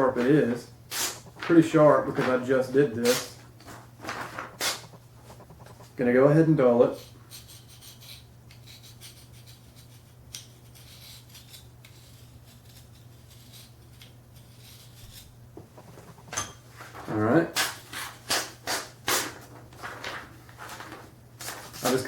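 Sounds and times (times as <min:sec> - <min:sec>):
low steady hum: 0:00.0 - 0:22.0
knife scraping hard surface: 0:06.9 - 0:16.6.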